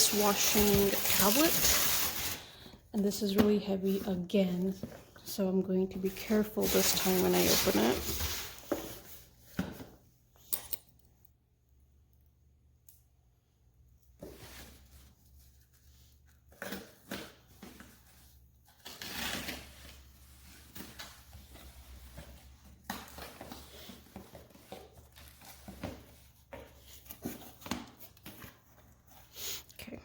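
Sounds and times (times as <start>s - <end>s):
cardboard box being unpacked: 0.0s - 5.0s, 6.1s - 9.9s, 14.2s - 29.3s.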